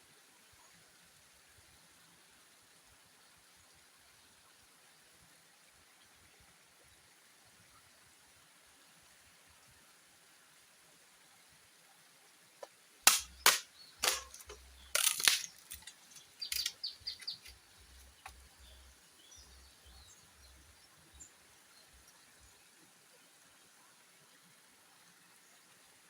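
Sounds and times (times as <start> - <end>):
sharp cracks and knocks: 12.6 - 17.6
faint high bird chirps: 13.3 - 22.7.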